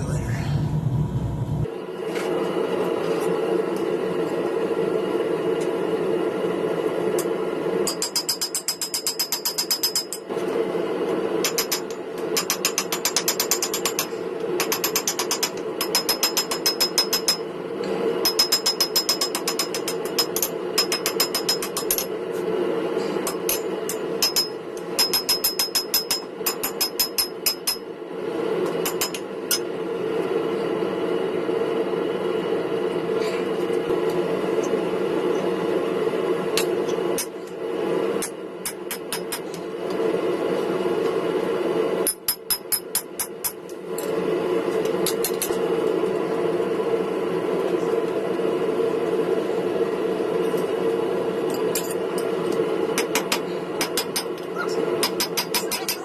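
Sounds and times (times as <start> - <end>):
steady hum: 0.0 - 7.8
hammer striking steel on anvil: 38.2 - 39.5, 53.0 - 54.4, 55.0 - 56.0.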